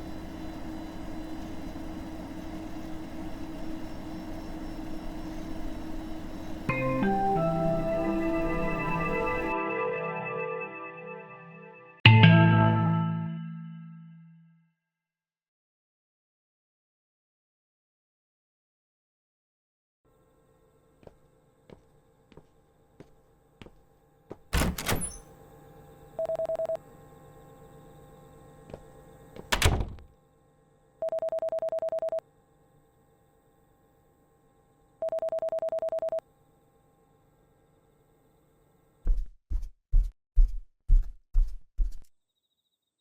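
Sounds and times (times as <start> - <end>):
telephone ringing: 26.2 - 26.8, 31.0 - 32.2, 35.0 - 36.2
heavy door-like thuds: 29.4 - 30.1.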